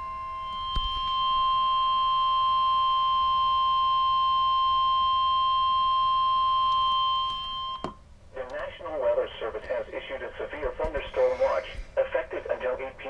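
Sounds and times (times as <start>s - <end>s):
steady high alarm tone: 0.0s - 8.0s.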